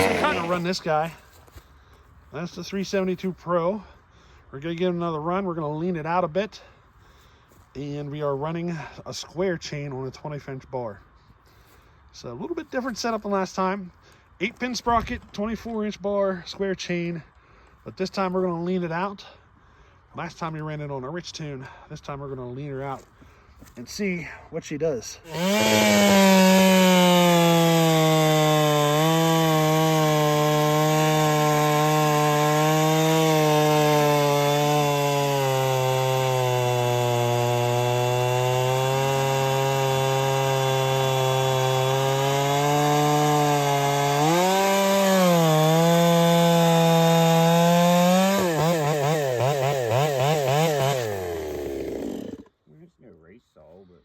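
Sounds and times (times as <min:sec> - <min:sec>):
chainsaw cutting log: 0:00.0 - 0:01.3, 0:25.3 - 0:52.5.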